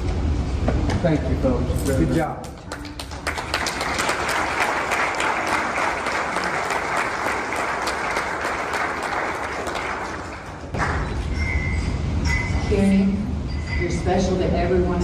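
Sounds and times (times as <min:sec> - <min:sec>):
crowd applauding: 0:02.4 - 0:11.2.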